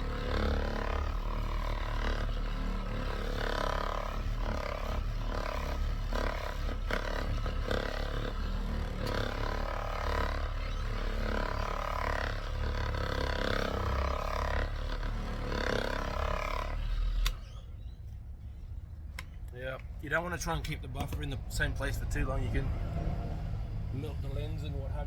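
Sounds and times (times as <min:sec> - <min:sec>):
power buffer polishing plastic: 0:00.0 - 0:17.7.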